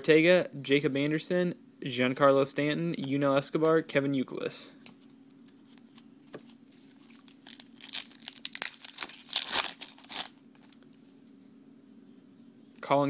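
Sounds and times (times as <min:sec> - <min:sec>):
wrapper tearing and crinkling: 0:06.8 - 0:10.9.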